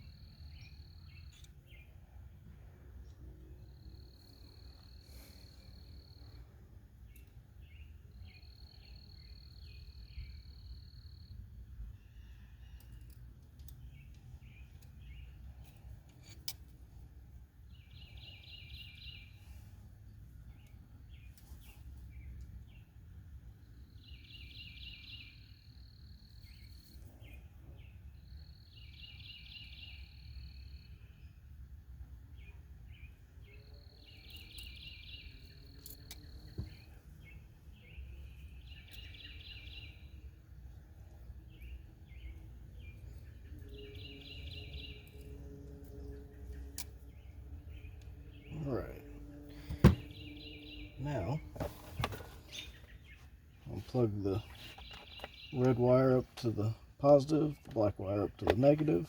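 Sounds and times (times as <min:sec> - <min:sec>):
low steady rumble: 0:34.8 - 0:54.7.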